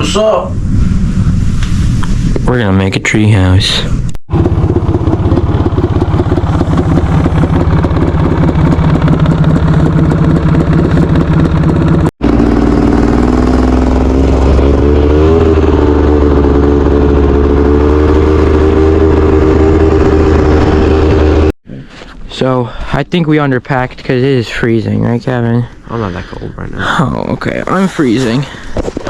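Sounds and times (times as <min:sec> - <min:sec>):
engine running: 0:00.0 - 0:21.6.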